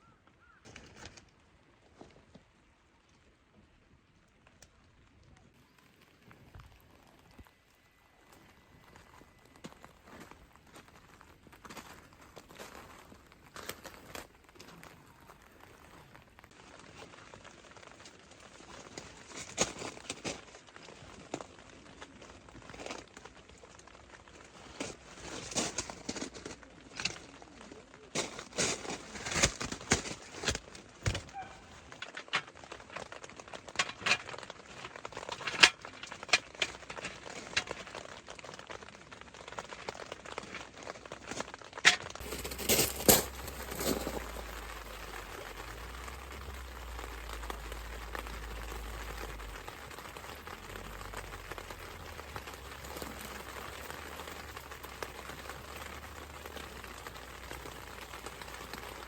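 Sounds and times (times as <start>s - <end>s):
crinkling and rustling: 0.0s - 2.5s, 4.4s - 59.0s
steady low rumble: 42.2s - 58.1s.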